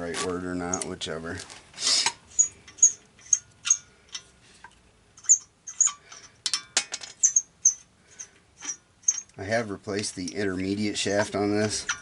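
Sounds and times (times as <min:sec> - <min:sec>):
metal tools clinking: 0:05.2 - 0:12.0.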